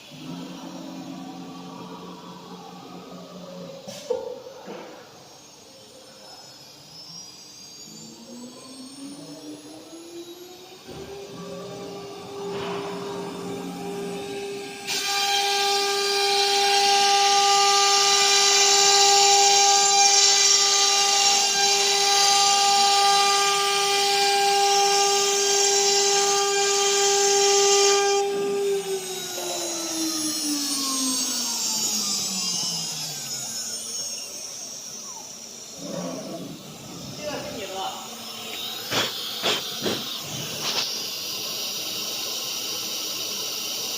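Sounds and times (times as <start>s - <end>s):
spindle motor whine: 0.0s - 43.9s
loud hiss: 37.3s - 43.9s.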